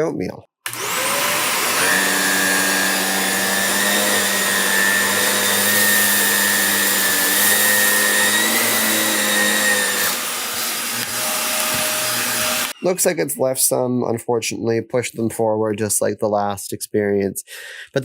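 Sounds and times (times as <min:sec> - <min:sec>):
vacuum cleaner running on carpet: 0:00.7 - 0:12.8.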